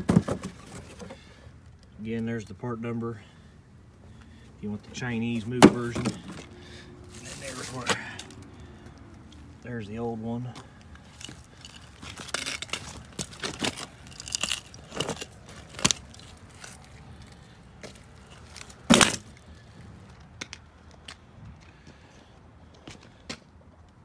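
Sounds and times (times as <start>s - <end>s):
rustling and crunching: 0.0s - 1.4s, 4.9s - 8.7s, 10.5s - 20.1s.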